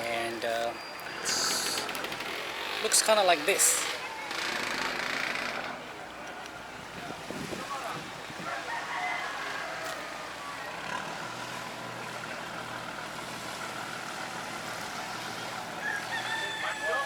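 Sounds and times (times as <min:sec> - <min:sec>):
outdoor background noise: 0:00.0 - 0:17.0
rooster crowing: 0:08.4 - 0:11.0, 0:15.7 - 0:17.0.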